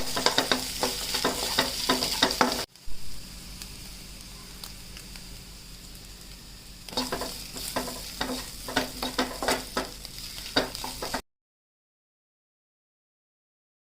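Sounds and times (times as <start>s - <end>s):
utensil scraping a pan: 0.0s - 2.7s, 6.9s - 11.2s
food sizzling in a frying pan: 0.0s - 11.2s.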